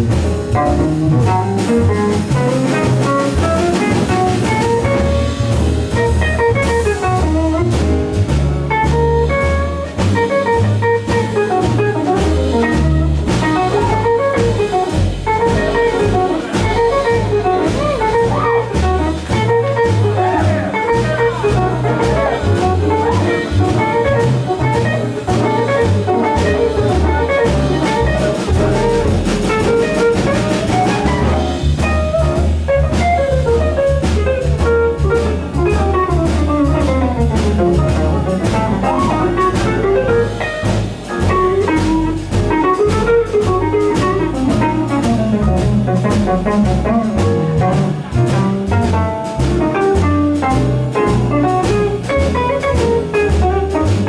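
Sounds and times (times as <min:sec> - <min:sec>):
double bass: 0:00.0 - 0:54.0
drum kit: 0:00.0 - 0:54.0
melodic solo line: 0:11.6 - 0:40.6.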